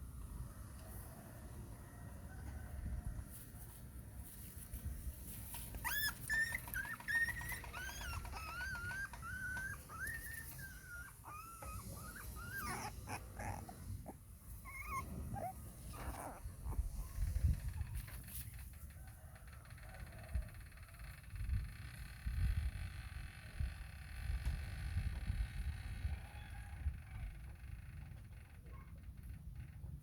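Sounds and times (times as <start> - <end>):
puppy whining: 5.5 - 18.1.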